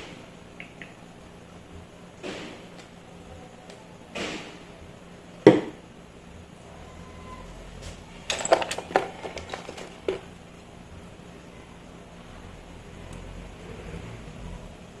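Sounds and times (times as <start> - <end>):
clicks and knocks of hard objects: 8.3 - 10.3.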